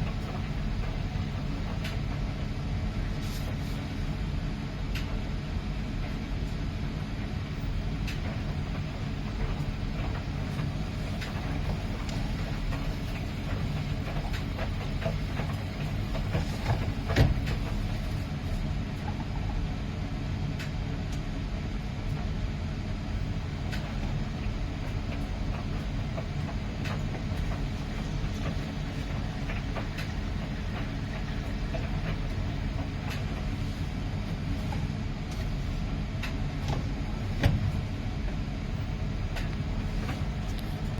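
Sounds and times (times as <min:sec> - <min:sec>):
washing machine drum rumbling: 0:07.5 - 0:19.6, 0:23.1 - 0:40.9.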